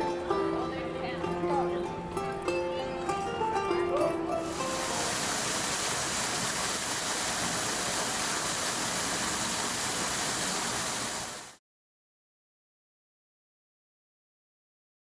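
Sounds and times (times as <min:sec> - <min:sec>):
steady rushing hiss: 0:04.4 - 0:11.6.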